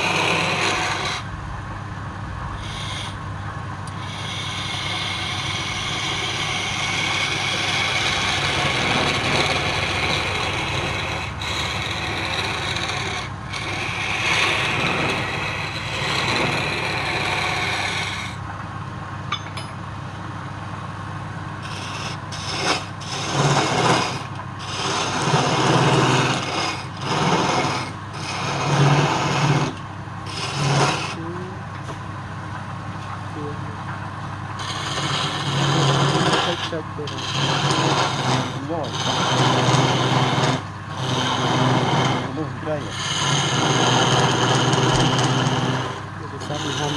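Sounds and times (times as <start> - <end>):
tool scraping spinning wood: 0.0 - 1.3, 2.5 - 18.5, 21.6 - 32.0, 33.0 - 46.9
lathe motor hum: 0.0 - 1.4, 2.4 - 18.5, 21.4 - 46.9.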